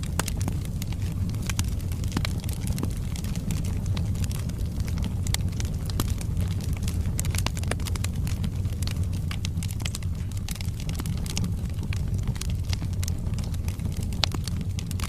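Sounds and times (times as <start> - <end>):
logs crackling and popping: 0.0 - 15.0
low rumble of flames: 0.0 - 15.0.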